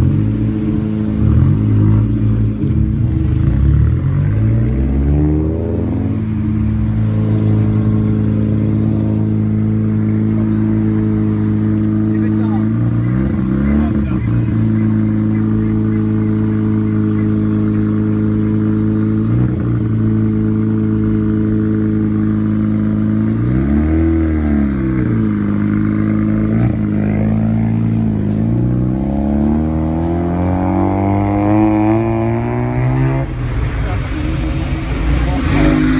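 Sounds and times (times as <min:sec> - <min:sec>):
car engine idling loudly: 0:06.1 - 0:23.6, 0:24.2 - 0:28.6, 0:33.2 - 0:35.9.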